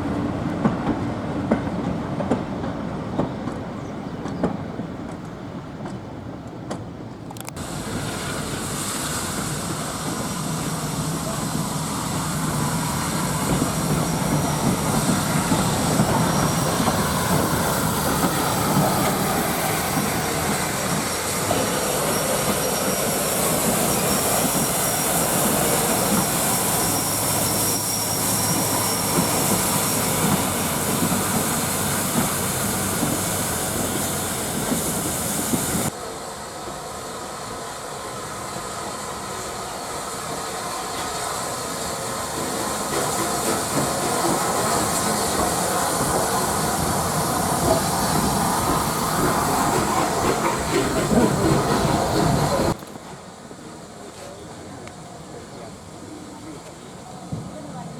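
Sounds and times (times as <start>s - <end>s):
train wheels clattering over rails: 0.0s - 35.9s, 40.3s - 53.2s
high wheel squeal: 8.2s - 35.9s, 40.8s - 52.8s.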